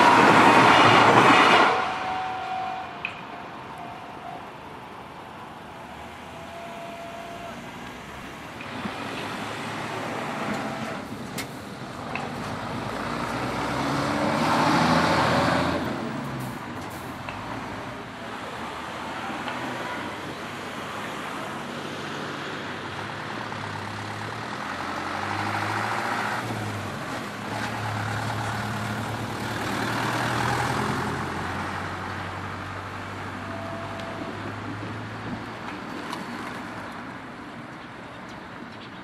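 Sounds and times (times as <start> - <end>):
vehicles driving past: 0.0 - 39.0.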